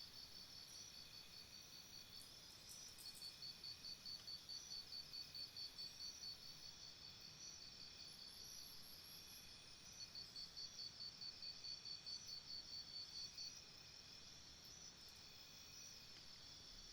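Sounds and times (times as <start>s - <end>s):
crickets chirping: 0.2s - 6.8s.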